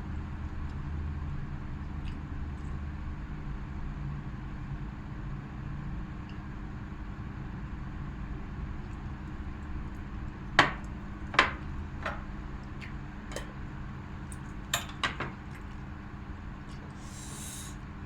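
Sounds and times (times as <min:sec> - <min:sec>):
cutlery clinking on a plate: 0:10.6 - 0:12.3, 0:14.7 - 0:15.5.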